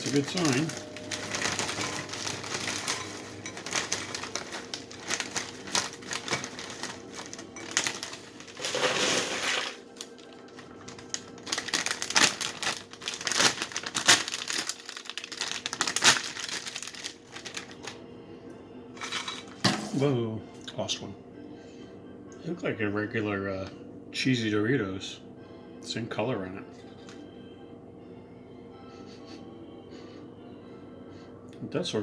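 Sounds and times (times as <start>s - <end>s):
chip bag crinkling: 0.0s - 18.0s.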